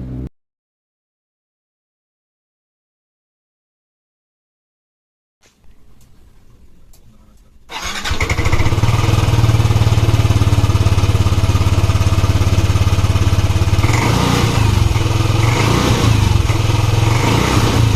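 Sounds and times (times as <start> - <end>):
scooter engine running: 7.7 - 17.9.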